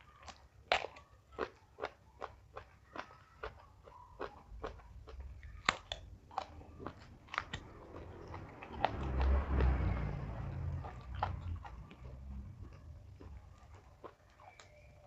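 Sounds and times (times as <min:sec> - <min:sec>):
crunchy chewing of vegetables: 0:00.0 - 0:15.0
low rumble: 0:06.8 - 0:13.6.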